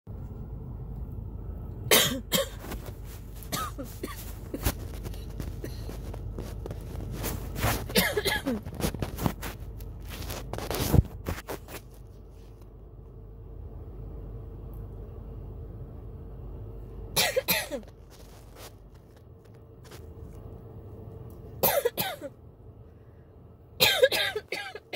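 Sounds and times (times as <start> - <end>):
person coughing: 1.9 - 2.7, 3.5 - 6.0, 7.8 - 8.8, 17.2 - 18.0, 21.6 - 22.3, 23.8 - 24.9.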